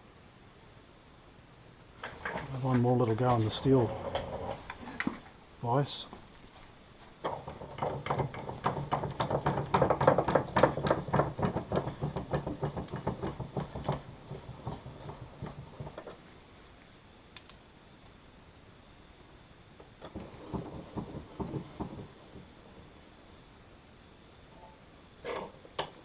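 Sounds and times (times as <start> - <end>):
rapid knocks on metal: 7.2 - 16.2, 20.1 - 22.5.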